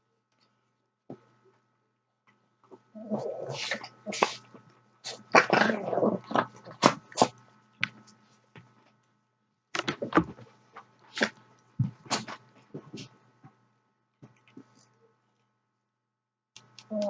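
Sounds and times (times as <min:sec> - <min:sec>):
dogs playing noisily: 0:02.6 - 0:08.3.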